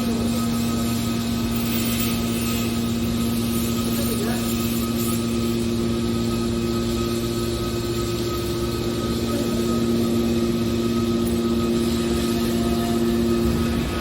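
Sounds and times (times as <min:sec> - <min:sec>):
wire baler machine humming: 0:00.0 - 0:14.0.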